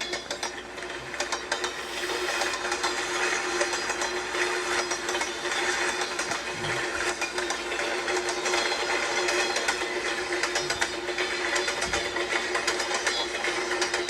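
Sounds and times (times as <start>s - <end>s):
steady hum: 0.0s - 14.0s
train wheels clickety-clack: 0.0s - 14.0s.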